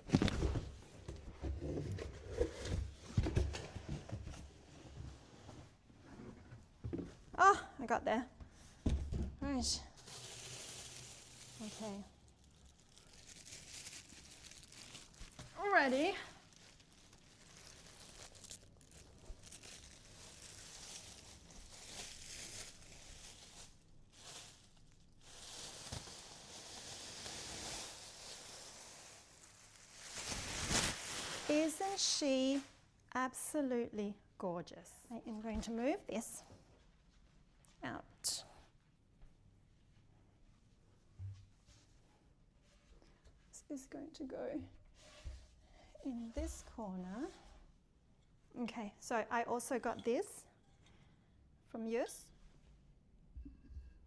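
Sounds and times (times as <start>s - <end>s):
packaging rustling and crumpling: 9.9s - 32.6s.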